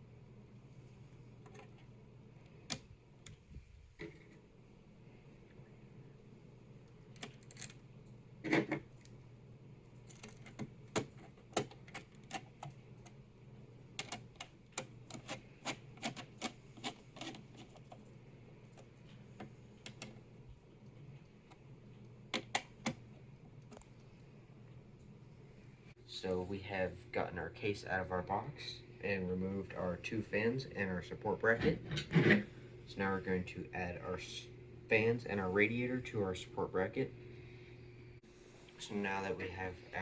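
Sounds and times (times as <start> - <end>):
small computer parts clicking: 6.9 - 7.8, 9.9 - 13.2.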